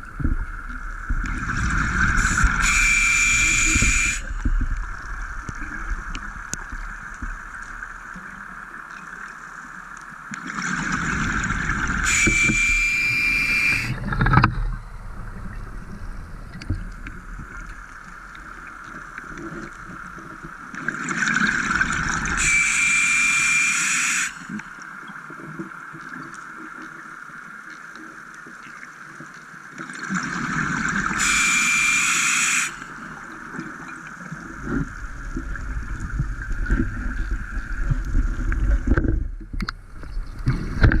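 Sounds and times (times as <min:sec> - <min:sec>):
steady hum: 0:00.0 - 0:08.2, 0:11.3 - 0:20.4, 0:21.8 - 0:24.8
exhaled bubbles gurgling: 0:00.0 - 0:09.1, 0:10.4 - 0:22.6
low rumbling: 0:13.4 - 0:18.4
regulator inhalation hiss: 0:22.4 - 0:24.6, 0:31.2 - 0:33.0.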